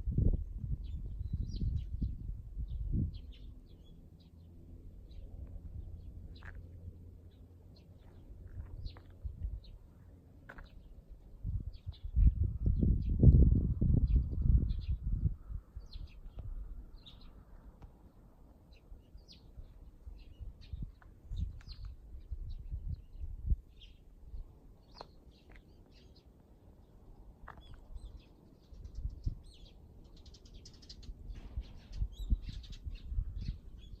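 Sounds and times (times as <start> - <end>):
wind buffeting microphone: 0.0 - 3.6, 8.2 - 9.9, 10.8 - 17.6, 19.0 - 24.9, 27.6 - 34.0
small birds chirping: 0.7 - 34.0.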